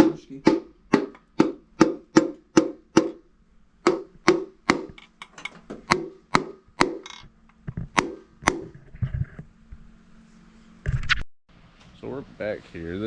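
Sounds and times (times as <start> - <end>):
piston tapped into cylinder knocks: 0.0 - 3.2, 3.8 - 8.7.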